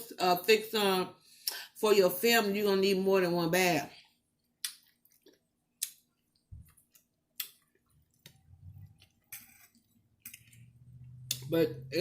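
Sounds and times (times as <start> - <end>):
person chewing food: 4.0 - 11.4.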